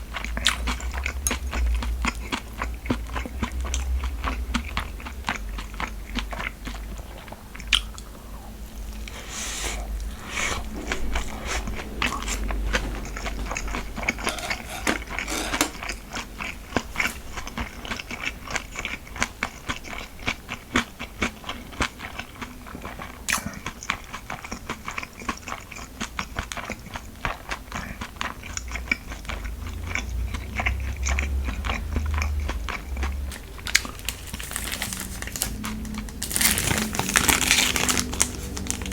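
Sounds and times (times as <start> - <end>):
person chewing and biting food: 9.8 - 20.0, 22.8 - 38.9.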